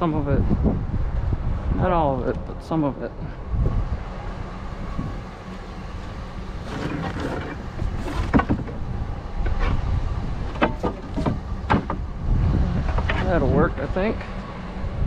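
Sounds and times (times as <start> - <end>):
steady low rumble: 0.0 - 15.0
wooden pieces knocking: 6.7 - 8.8, 10.5 - 12.0.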